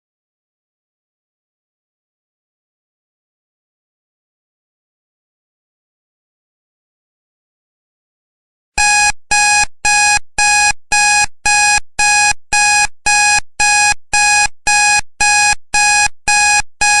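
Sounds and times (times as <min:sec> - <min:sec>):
timer alarm beeping: 0:08.8 - 0:17.0.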